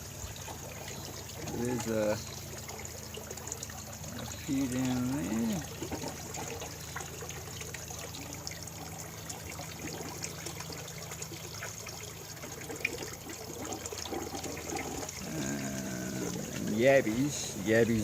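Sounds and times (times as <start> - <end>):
low steady hum: 0.0 - 18.0
water trickling into pond: 0.0 - 18.0.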